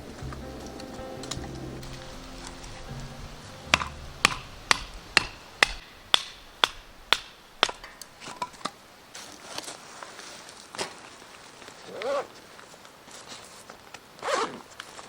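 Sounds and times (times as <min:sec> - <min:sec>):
background music: 0:00.0 - 0:05.8.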